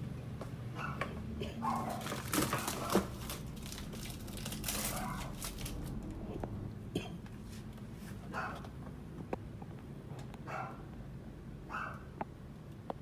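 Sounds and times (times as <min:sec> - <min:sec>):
rustling and crinkling handling: 0:01.6 - 0:06.2.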